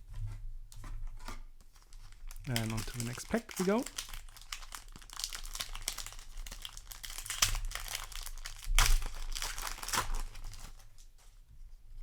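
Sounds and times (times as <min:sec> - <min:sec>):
foil wrapper crinkling: 0:01.7 - 0:11.1.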